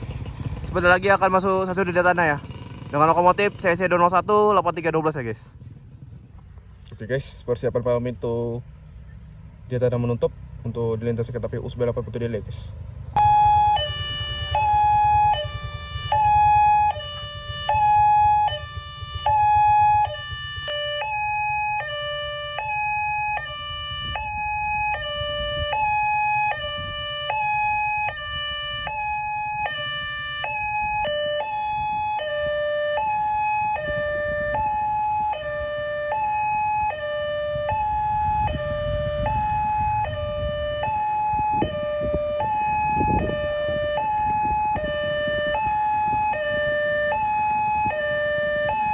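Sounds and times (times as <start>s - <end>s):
two-tone level crossing siren: 13.1s - 48.9s.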